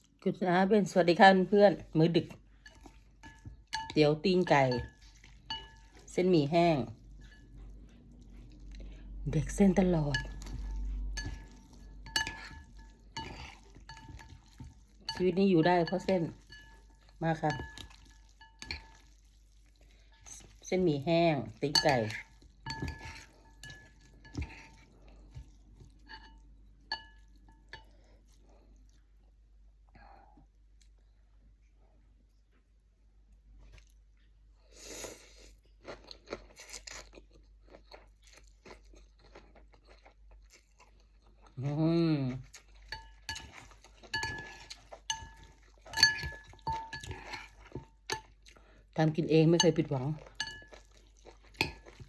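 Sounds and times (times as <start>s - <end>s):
utensils clinking against a bowl: 2.2s - 7.6s, 9.7s - 19.2s, 20.1s - 28.0s, 42.4s - 48.4s, 49.5s - 52.0s.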